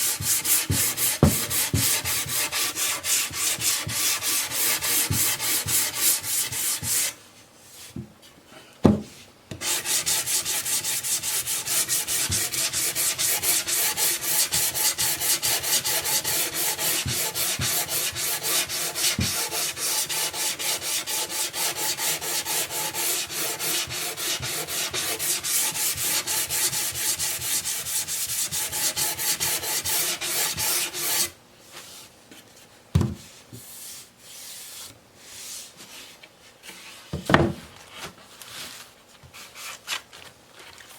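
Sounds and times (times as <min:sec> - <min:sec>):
sandpaper rubbing wood: 0:00.0 - 0:07.2, 0:09.6 - 0:31.3
thump: 0:08.8 - 0:09.1, 0:37.2 - 0:37.6.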